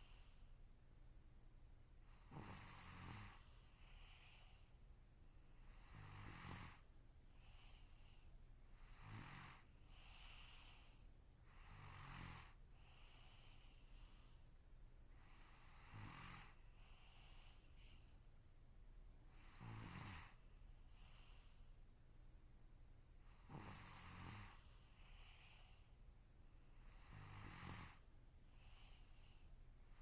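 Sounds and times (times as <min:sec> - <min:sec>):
person snoring: 0:02.2 - 0:04.6, 0:05.7 - 0:06.8, 0:08.8 - 0:13.8, 0:15.3 - 0:17.6, 0:19.3 - 0:20.4, 0:23.3 - 0:25.8, 0:26.8 - 0:28.0
breathy hiss of breath: 0:02.2 - 0:04.8, 0:05.8 - 0:14.5, 0:15.1 - 0:18.2, 0:19.3 - 0:21.8, 0:23.4 - 0:26.0, 0:26.8 - 0:29.5.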